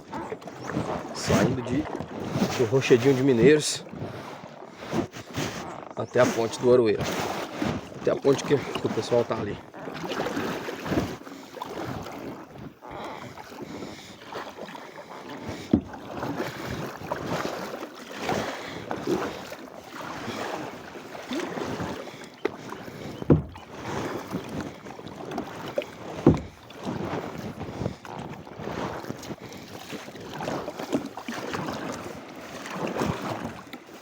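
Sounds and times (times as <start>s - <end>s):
paddle swishing through water: 0.0s - 34.0s
sharp knocks: 23.2s - 23.6s, 26.2s - 26.5s.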